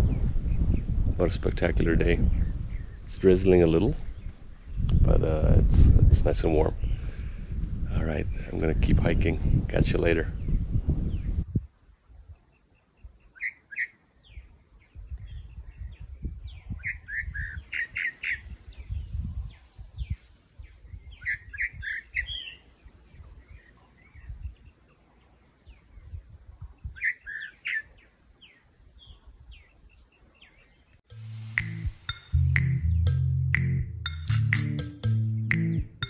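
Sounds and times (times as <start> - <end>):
birds chirping: 12.0 - 33.2
music: 31.1 - 36.0.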